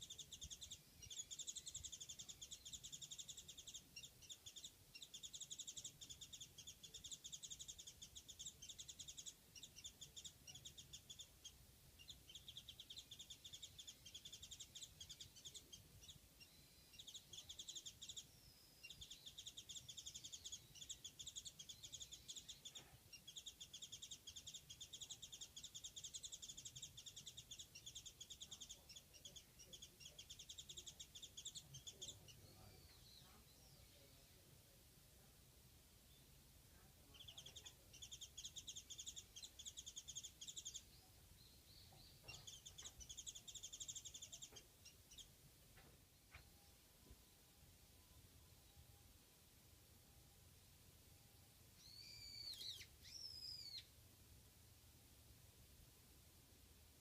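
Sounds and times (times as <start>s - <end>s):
bird twittering: 0.0s - 33.4s, 37.1s - 40.9s, 41.8s - 45.3s, 51.8s - 53.9s.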